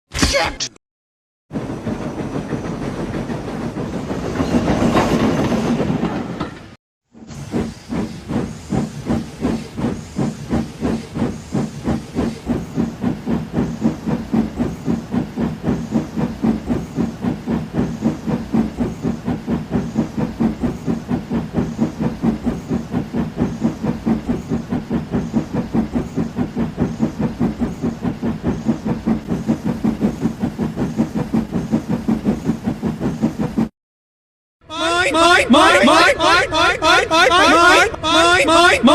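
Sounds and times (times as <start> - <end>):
steam locomotive chuffing: 1.5 - 33.7
steam hissing: 7.2 - 33.7.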